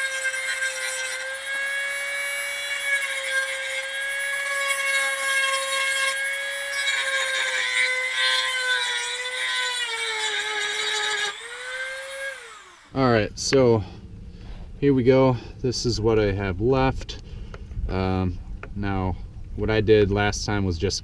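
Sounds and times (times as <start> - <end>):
electric saw cutting wood: 0.0 - 13.0.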